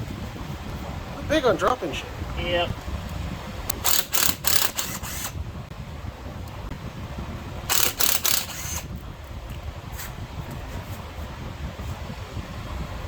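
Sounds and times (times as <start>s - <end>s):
ratchet wrench clicking: 3.7s - 5.4s, 7.7s - 8.9s.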